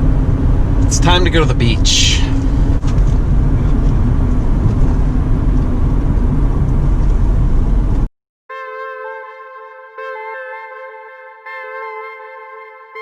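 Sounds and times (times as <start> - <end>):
car driving: 0.0 - 8.1
music with held tones: 8.5 - 13.0.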